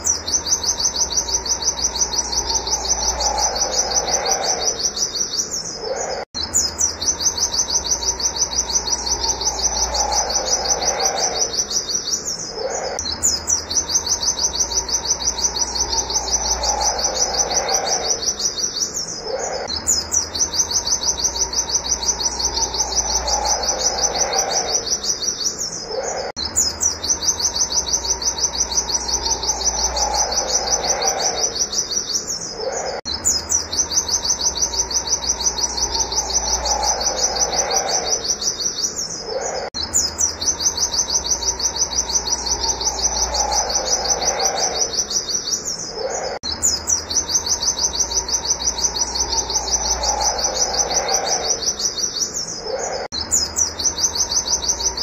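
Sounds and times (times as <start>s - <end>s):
lower falling bird call: 0.0s - 55.0s.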